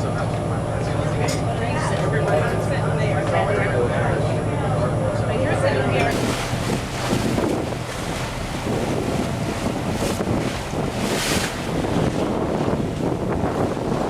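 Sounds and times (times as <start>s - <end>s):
boat engine drone: 0.0s - 14.0s
wind buffeting microphone: 6.0s - 14.0s.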